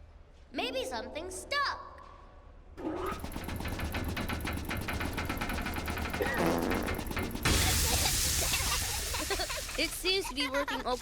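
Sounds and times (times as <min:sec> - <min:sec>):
cartoon machine rattling: 0:02.8 - 0:10.5.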